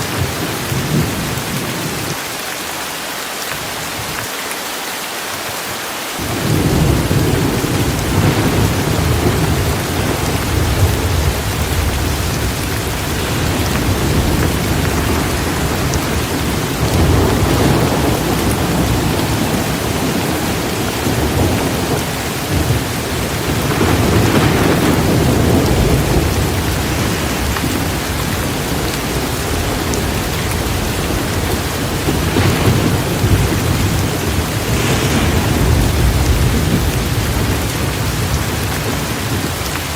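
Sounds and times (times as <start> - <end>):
rain pouring: 0.0 - 39.9
low rumbling thunder: 6.2 - 39.6.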